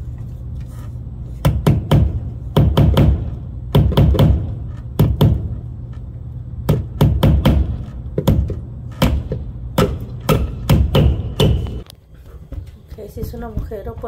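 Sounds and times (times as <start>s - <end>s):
hammer tapping nails: 6.7s - 11.8s.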